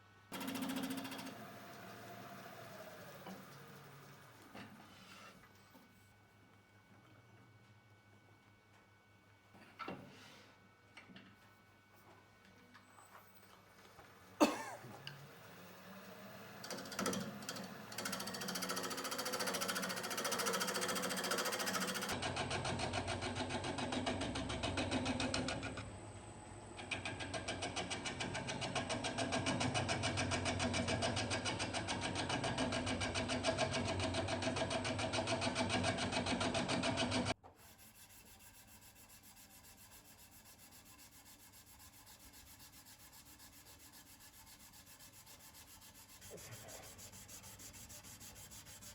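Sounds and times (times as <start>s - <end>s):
wood lathe with rhythmic chatter: 0.4s - 4.5s, 15.0s - 22.2s, 27.0s - 48.9s.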